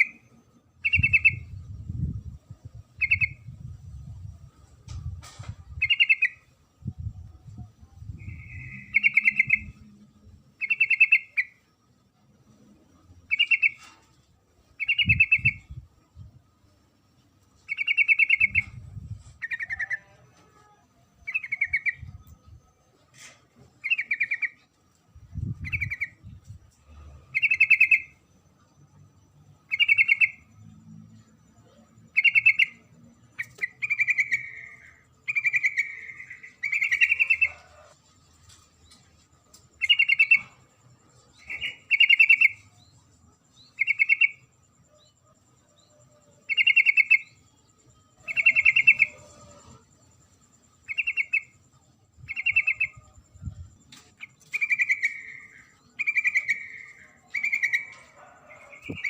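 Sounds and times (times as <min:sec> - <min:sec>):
bird chattering calls: 0:54.2 - 0:59.0.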